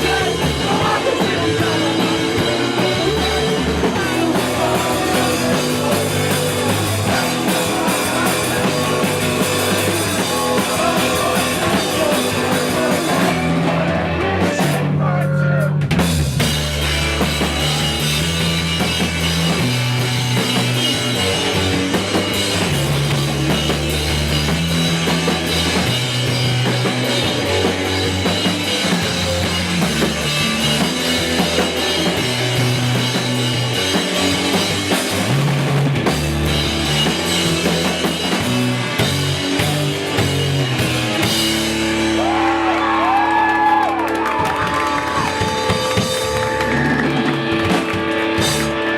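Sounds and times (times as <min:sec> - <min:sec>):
live rock band playing: 0:00.0 - 0:48.9
audience cheering and whooping: 0:42.1 - 0:48.4.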